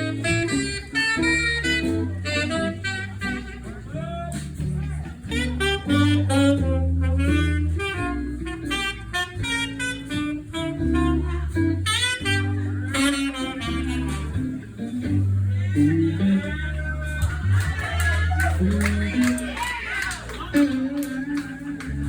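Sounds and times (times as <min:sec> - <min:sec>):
jazz band music: 0:00.0 - 0:22.0.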